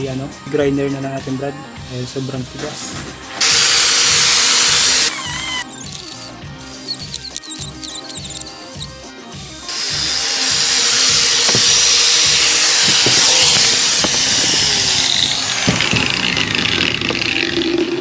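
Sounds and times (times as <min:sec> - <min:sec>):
background music: 0:00.0 - 0:18.0
angle grinder wire brush on steel: 0:09.7 - 0:17.4.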